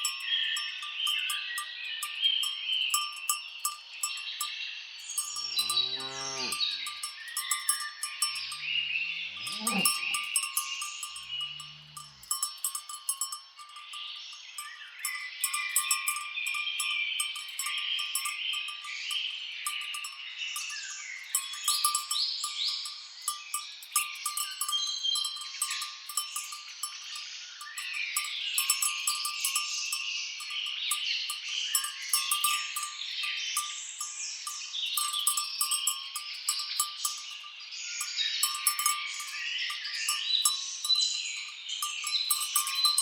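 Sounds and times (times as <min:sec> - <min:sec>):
cowbells clinking: 0:00.0 - 0:43.0
birds chirping and singing: 0:05.0 - 0:12.5.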